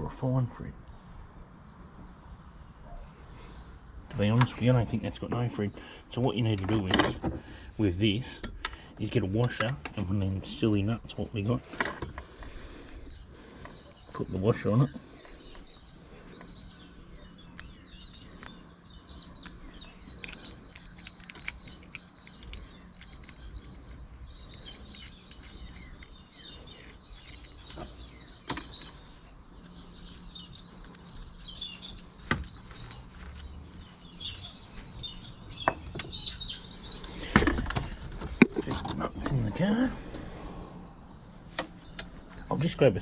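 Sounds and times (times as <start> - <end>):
birds chirping: 0.0 - 43.0
small metal parts clicking: 13.0 - 13.4, 19.4 - 27.8, 28.4 - 34.9.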